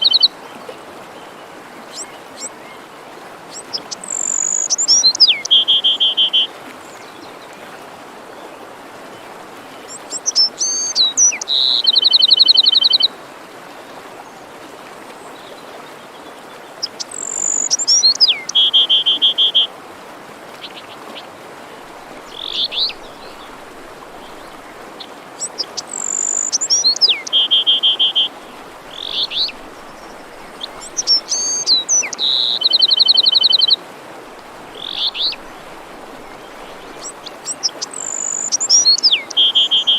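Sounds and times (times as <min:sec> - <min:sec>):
songbird singing whistle and trill: 0:00.0 - 0:00.3, 0:03.5 - 0:06.5, 0:10.1 - 0:13.1, 0:16.9 - 0:19.7, 0:25.4 - 0:28.3, 0:28.9 - 0:33.8, 0:34.7 - 0:39.9
forest stream rushing: 0:00.0 - 0:39.9.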